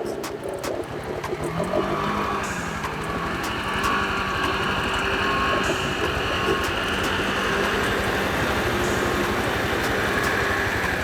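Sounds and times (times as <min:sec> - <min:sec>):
utility vehicle engine running: 0:00.0 - 0:11.0.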